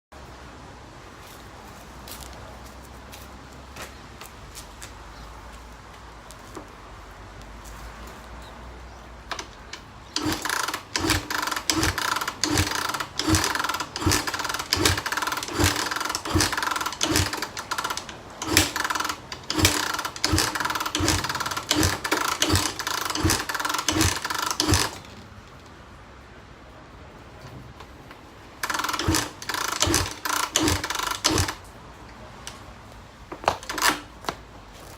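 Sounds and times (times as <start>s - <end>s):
engine cranking without starting: 9.2s - 25.7s, 28.6s - 31.7s, 33.6s - 34.1s.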